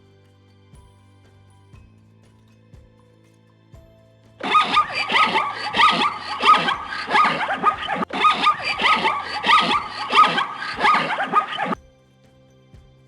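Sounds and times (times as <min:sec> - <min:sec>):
zebra yelping barks: 0:04.4 - 0:11.8.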